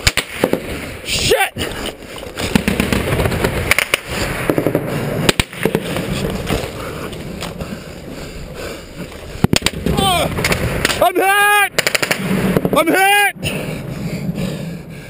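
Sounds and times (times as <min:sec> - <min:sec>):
gunshots: 0:00.0 - 0:00.8, 0:02.4 - 0:06.1, 0:09.4 - 0:11.1, 0:11.7 - 0:13.0.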